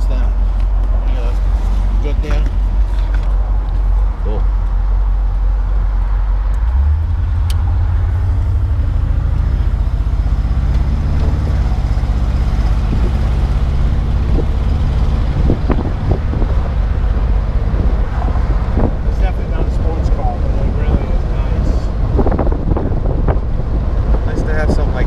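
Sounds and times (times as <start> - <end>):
car engine and exhaust cruising: 0.0 - 25.0
road and wind noise: 0.0 - 25.0.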